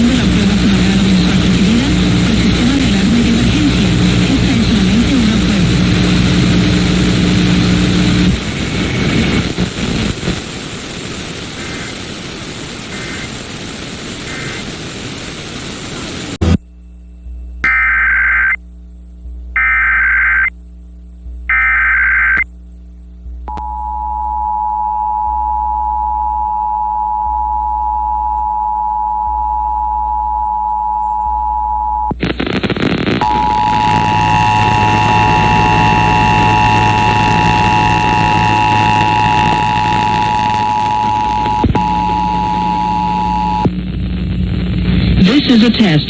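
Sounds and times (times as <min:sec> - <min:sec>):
hissing radio noise: 0:00.0 - 0:16.6, 0:17.6 - 0:18.6, 0:19.6 - 0:20.5, 0:21.5 - 0:22.4, 0:32.1 - 0:46.0
shrill warbling data tones: 0:17.6 - 0:18.6, 0:19.6 - 0:20.5, 0:21.5 - 0:22.4
two-tone attention signal: 0:21.5 - 0:22.4, 0:33.2 - 0:43.7.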